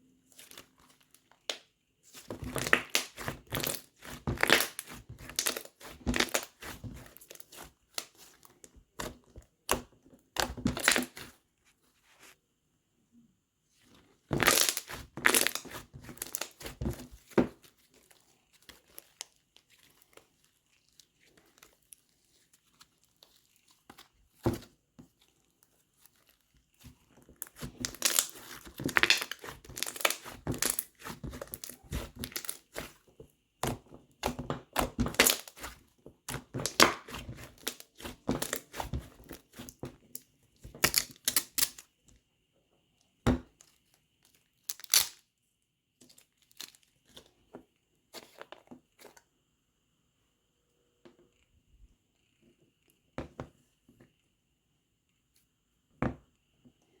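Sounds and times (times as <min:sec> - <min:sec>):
slime squished crackling and popping: 0:02.3 - 0:08.3, 0:14.3 - 0:17.4, 0:27.4 - 0:33.0, 0:34.2 - 0:39.8, 0:44.7 - 0:45.1.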